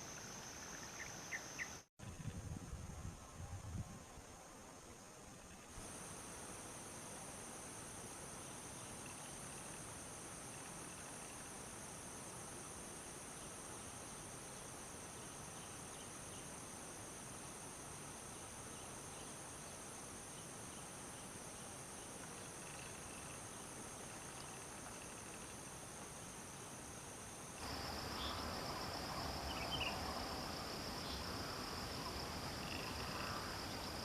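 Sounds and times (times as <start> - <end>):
insects trilling: 0.0 - 1.8, 18.3 - 34.0.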